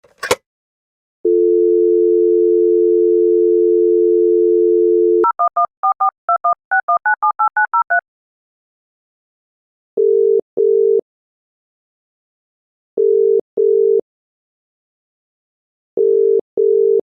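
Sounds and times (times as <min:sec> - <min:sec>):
telephone dial tone: 0:01.3 - 0:07.9, 0:16.0 - 0:17.0
keypad dialing tones: 0:01.3 - 0:08.0.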